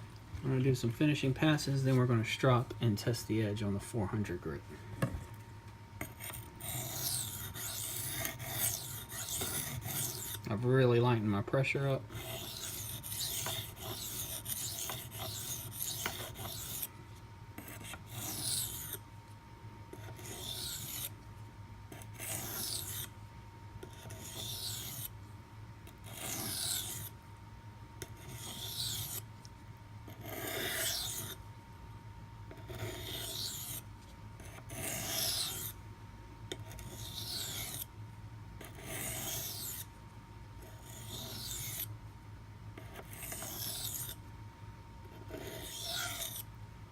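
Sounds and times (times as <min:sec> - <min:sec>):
knife scraping on whetstone: 0:06.0 - 0:10.4, 0:12.1 - 0:16.9, 0:17.6 - 0:19.0, 0:20.0 - 0:21.1, 0:22.0 - 0:23.1, 0:23.9 - 0:25.1, 0:26.0 - 0:27.1, 0:28.1 - 0:29.2, 0:30.2 - 0:31.4, 0:32.6 - 0:33.8, 0:34.4 - 0:35.8, 0:36.7 - 0:37.9, 0:38.6 - 0:39.9, 0:40.7 - 0:41.9, 0:42.9 - 0:44.2, 0:45.2 - 0:46.4.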